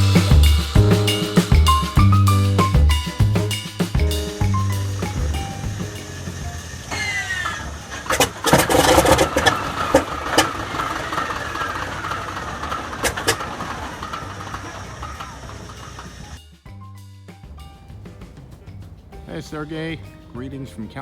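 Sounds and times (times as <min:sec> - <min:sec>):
loud irregular bangs and clatter: 0:00.0 - 0:16.4
engine starting with rising whine: 0:05.1 - 0:16.4.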